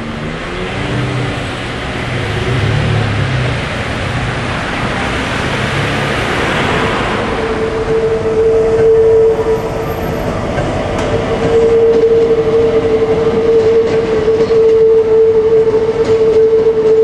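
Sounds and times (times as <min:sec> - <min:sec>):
train wheels clattering over rails: 0:06.3 - 0:17.0.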